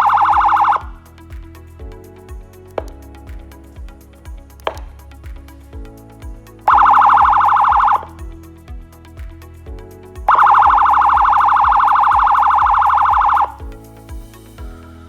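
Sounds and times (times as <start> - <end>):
electronic police siren: 0.0 - 1.0, 6.7 - 8.1, 10.3 - 13.6
background music with a beat: 0.0 - 15.0.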